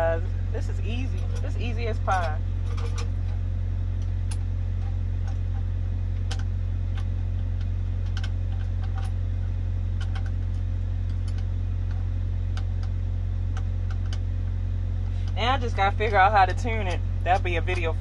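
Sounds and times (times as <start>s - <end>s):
diesel engine idling: 0.0s - 18.0s
small clicks and taps: 4.0s - 14.3s.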